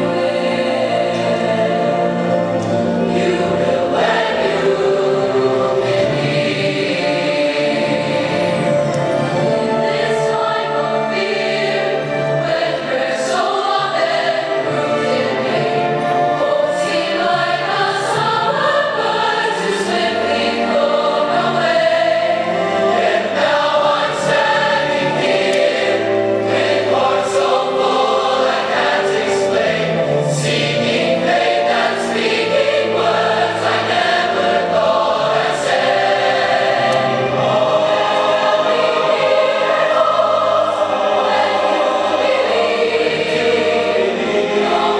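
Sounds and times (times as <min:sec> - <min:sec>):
choir singing: 0:00.0 - 0:44.9.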